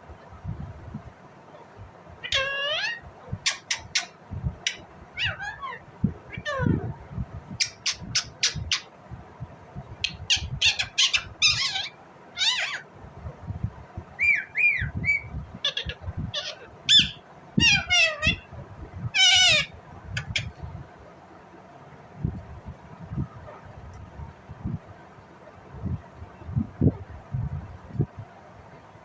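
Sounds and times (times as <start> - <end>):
parakeet squawking and chirping: 2.2 - 6.9, 7.6 - 8.9, 10.0 - 12.9, 14.2 - 18.5, 19.1 - 20.6.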